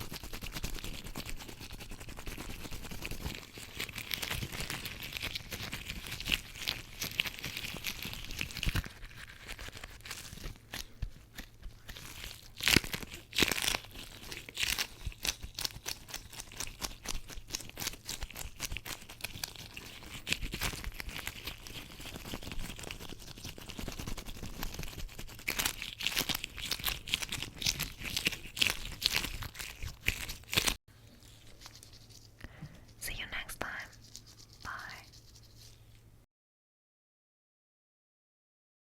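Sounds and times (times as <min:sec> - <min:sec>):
latex gloves rubbing: 0:33.8 - 0:36.0.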